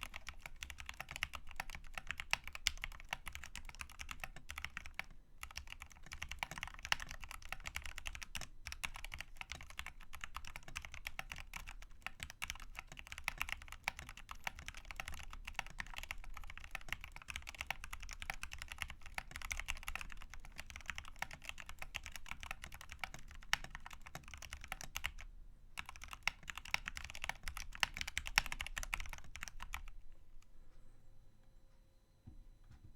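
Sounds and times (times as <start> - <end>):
mechanical keyboard typing: 0.0 - 30.0.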